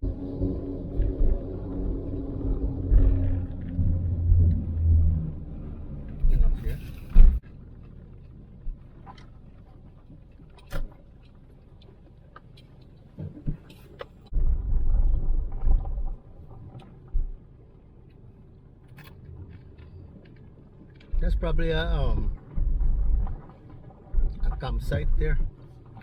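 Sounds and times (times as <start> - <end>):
loud low buffeting: 0.0 - 7.4
car road rumble: 0.0 - 26.0.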